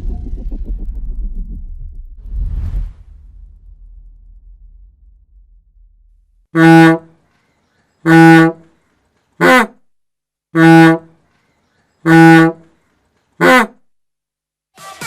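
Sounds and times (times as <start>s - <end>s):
bus air horn honking: 6.6s - 7.2s, 8.0s - 8.8s, 9.4s - 9.8s, 10.6s - 11.2s, 12.0s - 12.8s, 13.4s - 13.8s.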